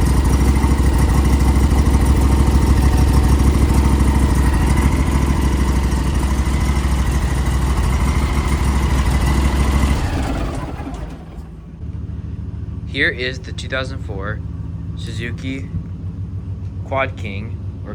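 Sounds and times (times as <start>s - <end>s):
lawnmower engine running: 0.0s - 17.9s.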